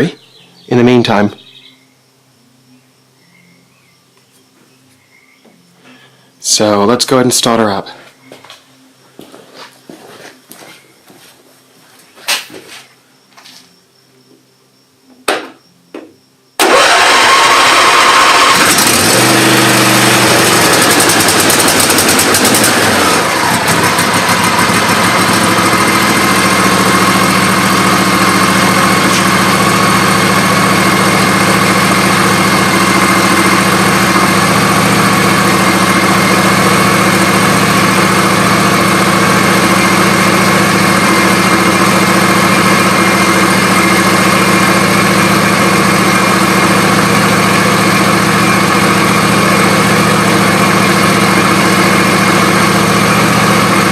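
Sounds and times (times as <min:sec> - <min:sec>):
lawn tractor engine idling: 0:16.6 - 0:53.9.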